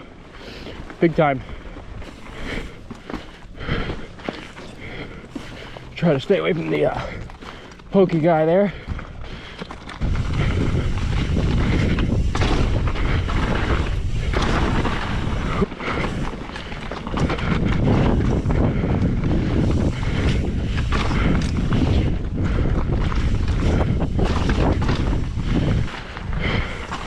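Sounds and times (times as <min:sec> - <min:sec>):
wind buffeting microphone: 0:08.6 - 0:27.0.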